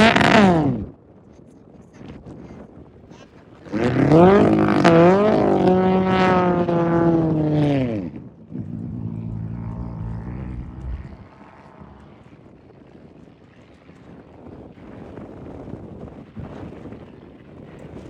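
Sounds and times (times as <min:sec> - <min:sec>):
race vehicle engine at high revs: 0:00.0 - 0:00.9, 0:03.6 - 0:12.2.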